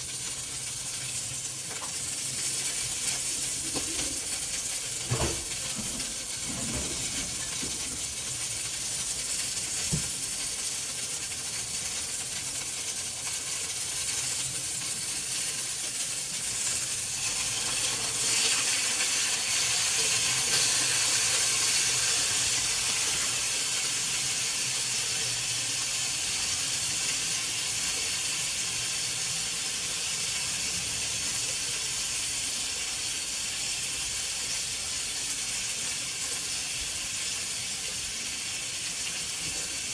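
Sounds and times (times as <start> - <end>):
food sizzling in a pan: 0.0 - 39.9.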